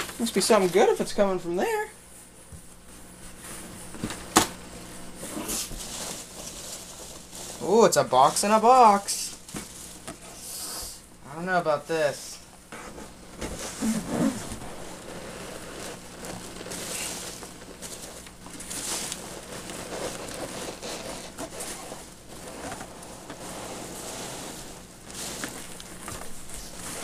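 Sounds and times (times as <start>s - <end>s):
hands rummaging through packing peanuts: 5.1s - 10.7s, 13.4s - 27.0s.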